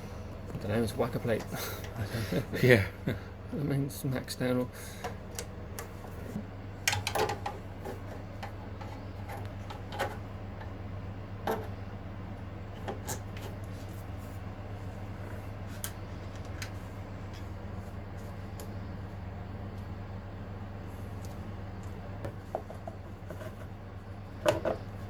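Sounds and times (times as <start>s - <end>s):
steady low hum: 0.0s - 25.0s
clicks and metal knocks: 6.8s - 10.8s.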